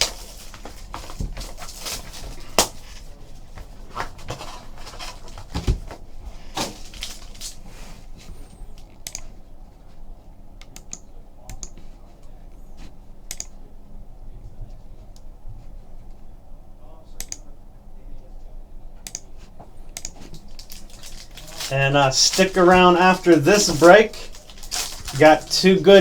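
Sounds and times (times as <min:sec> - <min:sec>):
cardboard clicks and rustles: 0:00.0 - 0:08.9, 0:20.1 - 0:26.0.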